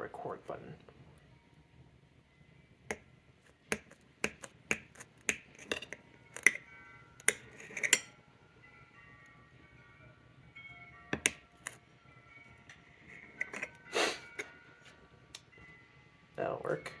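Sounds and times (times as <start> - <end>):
kitchen utensils clacking: 5.0 - 6.6, 7.2 - 8.2.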